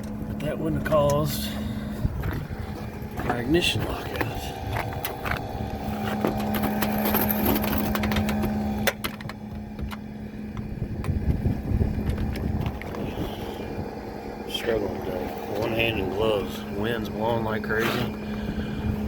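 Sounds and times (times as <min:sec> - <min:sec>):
rooftop unit humming: 0:00.0 - 0:19.0
wind rumbling on microphone: 0:01.6 - 0:14.2.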